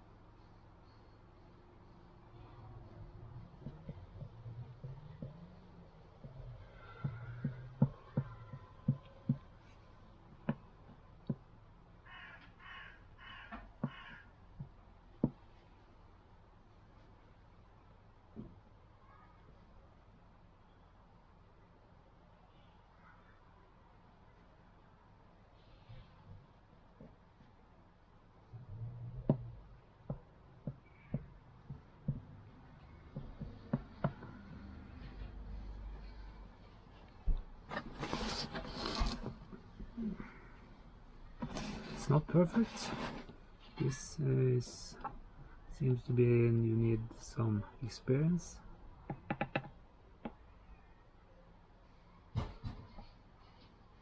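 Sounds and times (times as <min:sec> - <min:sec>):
faint low hum: 0:00.0 - 0:54.0
light knocks and taps: 0:06.2 - 0:09.5, 0:30.1 - 0:32.3
harsh cawing calls: 0:12.0 - 0:14.4
sharp knocks and clicks: 0:33.1 - 0:34.6, 0:49.0 - 0:50.4.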